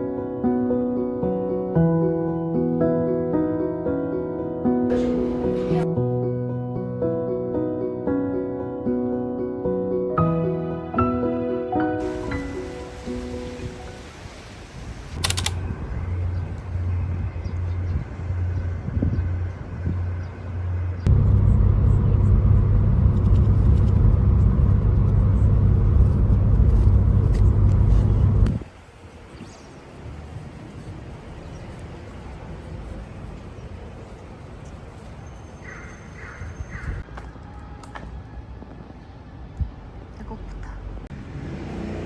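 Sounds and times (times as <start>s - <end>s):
low vehicle rumble: 15.2s - 28.6s.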